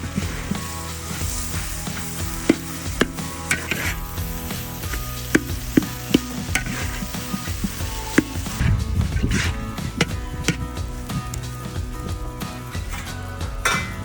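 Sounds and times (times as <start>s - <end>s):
food sizzling in hot oil: 0.0s - 14.0s
utensil knocking against pan: 1.9s - 12.2s.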